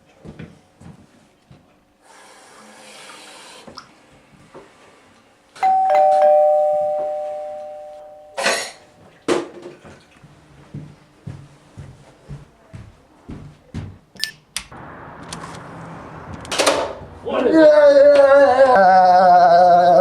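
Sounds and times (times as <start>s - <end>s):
two-note doorbell chime: 5.6s - 8.6s.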